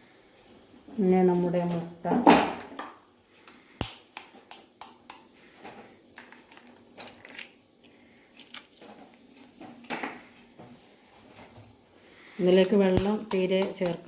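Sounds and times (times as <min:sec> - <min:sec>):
eggshells cracking: 0:06.1 - 0:08.8.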